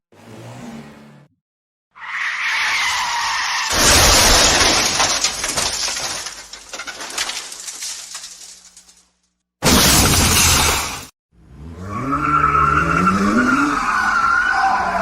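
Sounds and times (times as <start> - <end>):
car tyres screeching: 2.0 - 3.8, 11.7 - 15.0
car crash: 2.5 - 11.1
debris crunching and rattling: 2.9 - 11.1.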